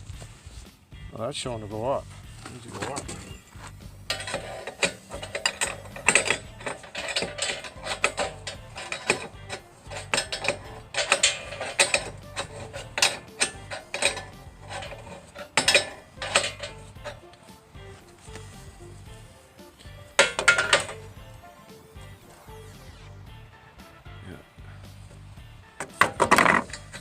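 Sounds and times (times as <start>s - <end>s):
ratchet wrench clicking: 4.1s - 17.5s, 18.2s - 21.3s, 25.8s - 27.0s.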